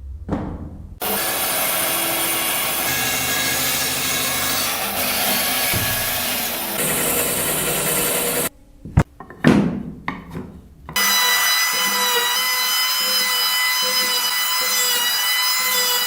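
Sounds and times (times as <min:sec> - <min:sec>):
power tool high whine: 0:01.0 - 0:08.5, 0:11.0 - 0:16.0
sharp knocks on wood: 0:05.7 - 0:06.3.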